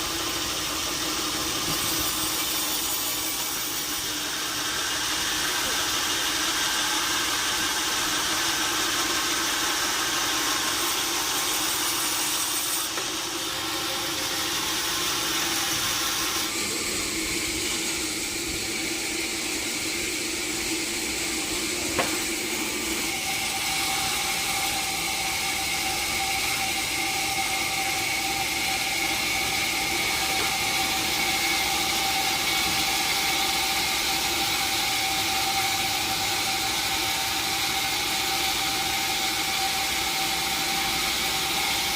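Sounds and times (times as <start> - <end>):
sawmill machinery hum: 0.0 - 41.9.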